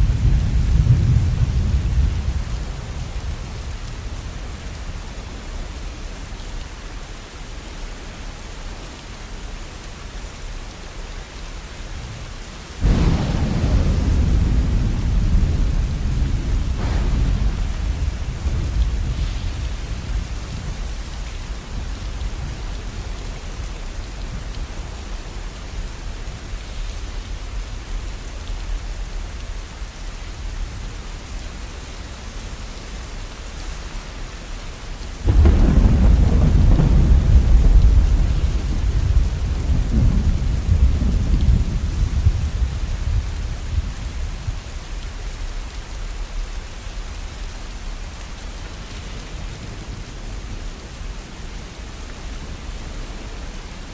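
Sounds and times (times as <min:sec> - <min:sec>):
thunder rumbling: 0:00.0 - 0:05.1, 0:12.8 - 0:28.0, 0:35.2 - 0:44.8
steady rain: 0:00.0 - 0:53.9.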